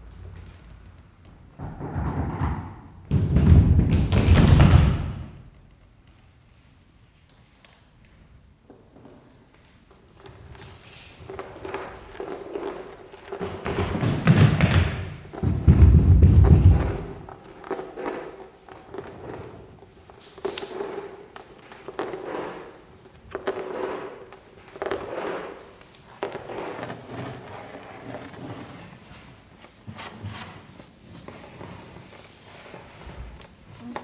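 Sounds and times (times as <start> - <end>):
knocks and taps: 1.6 - 5.4.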